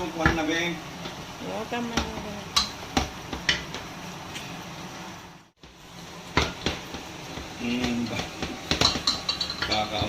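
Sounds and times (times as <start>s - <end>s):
metal spoon clinking on pot: 8.7s - 10.0s.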